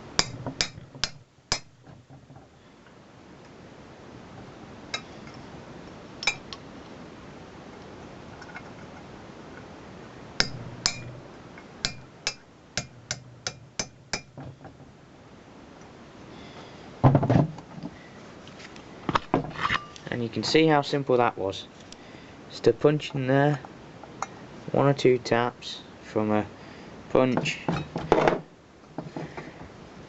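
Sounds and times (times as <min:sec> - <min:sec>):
hammer tapping metal punch: 0:00.0 - 0:02.0, 0:10.4 - 0:11.2, 0:11.8 - 0:14.5.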